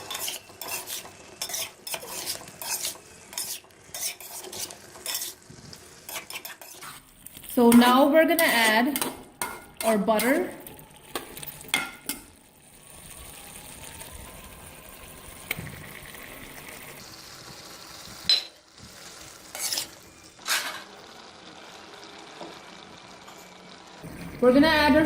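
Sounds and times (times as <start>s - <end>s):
spoon clinking and scraping: 0.0s - 5.4s, 6.1s - 7.0s, 18.3s - 18.6s, 19.5s - 20.8s
chicken sizzling in oil: 0.0s - 25.0s.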